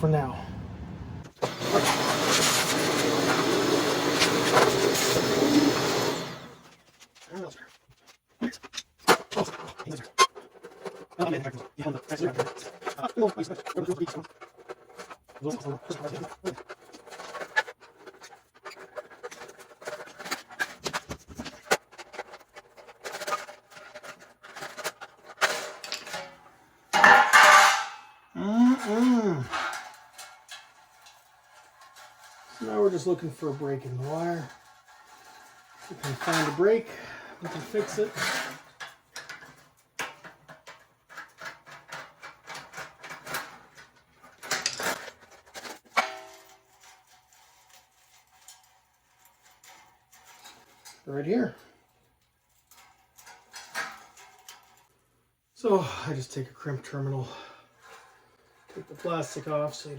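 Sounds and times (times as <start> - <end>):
clicks taps and scraping on metal: 8.0 - 28.1, 37.9 - 55.0
metal clicks and rattles: 38.4 - 51.1.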